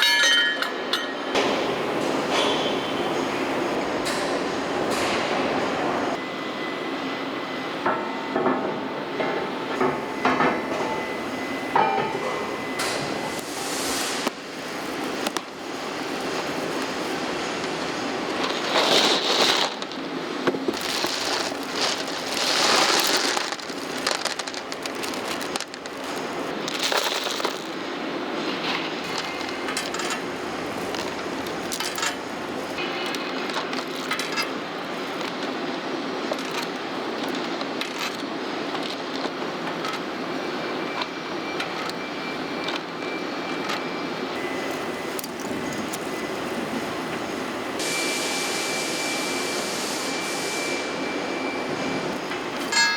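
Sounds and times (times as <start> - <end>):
metal parts clinking: 0.0 - 1.4, 29.0 - 35.3
factory machinery running: 0.0 - 52.9.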